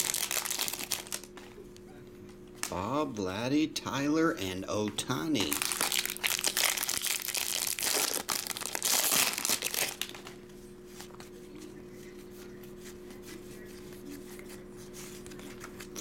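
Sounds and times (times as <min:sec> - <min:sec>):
card pack wrappers crinkling: 0:00.0 - 0:01.4, 0:05.3 - 0:10.3
steady hum: 0:00.0 - 0:16.0.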